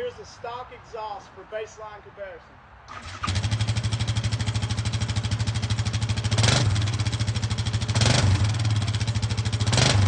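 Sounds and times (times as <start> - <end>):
engine idling: 2.9 - 10.0.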